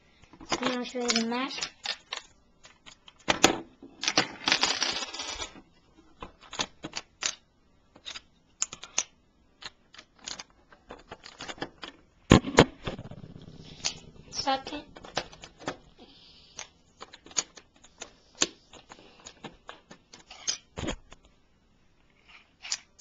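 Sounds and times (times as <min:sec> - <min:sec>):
plastic pieces clicking and clattering: 0:00.5 - 0:05.6, 0:06.2 - 0:12.0, 0:16.6 - 0:21.3, 0:22.6 - 0:23.0.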